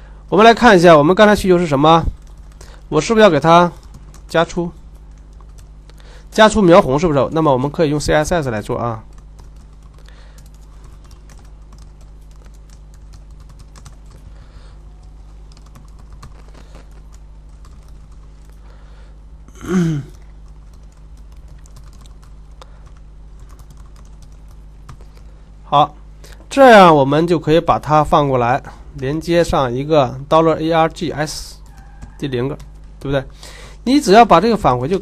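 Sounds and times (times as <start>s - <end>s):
low electrical hum: 0.0s - 35.0s
typing on a keyboard: 2.2s - 2.7s, 3.8s - 5.7s, 9.1s - 14.3s, 15.0s - 18.6s, 20.1s - 25.2s, 31.6s - 33.1s.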